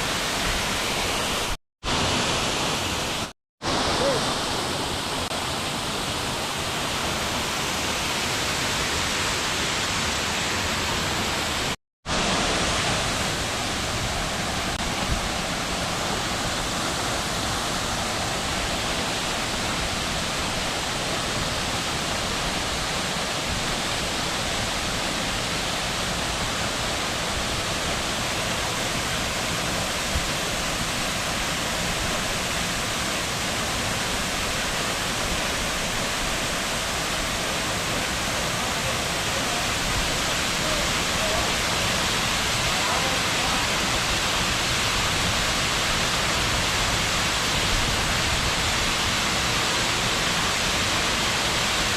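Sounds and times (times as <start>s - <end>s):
waterfall rushing: 0.0s - 51.9s.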